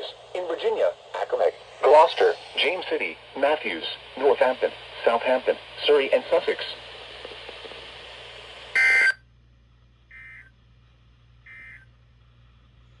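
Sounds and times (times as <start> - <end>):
radio hiss: 0.0 - 9.2.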